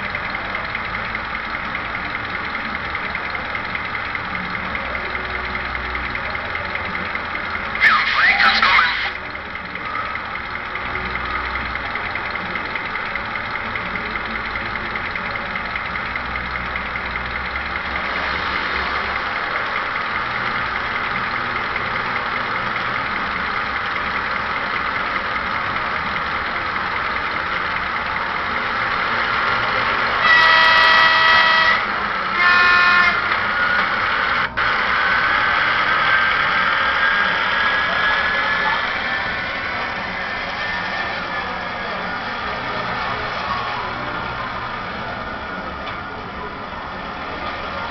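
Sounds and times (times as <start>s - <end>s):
diesel locomotive engine running: 0.0s - 47.9s
slowly rising whine: 25.8s - 47.9s
locomotive horn blasts: 30.0s - 35.1s.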